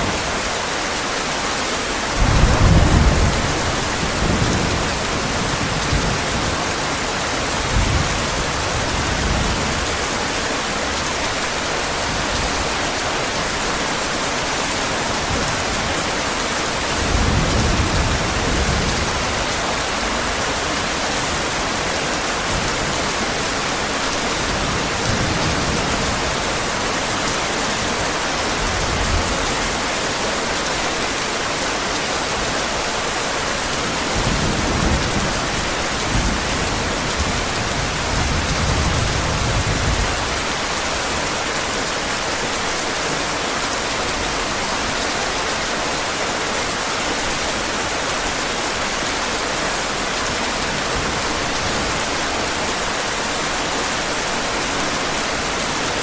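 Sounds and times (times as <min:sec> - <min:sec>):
heavy rain hissing: 0:00.0 - 0:56.0
distant thunder rumbling: 0:02.2 - 0:06.8.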